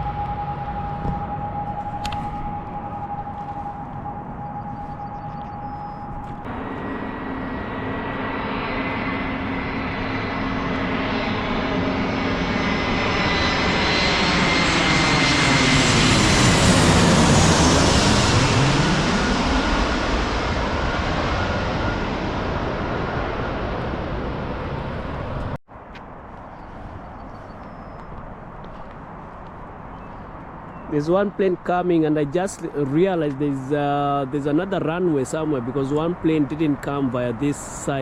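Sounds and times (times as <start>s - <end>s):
high engine fan whine: 0.0s - 25.6s
jet airliner flying overhead: 0.0s - 38.0s.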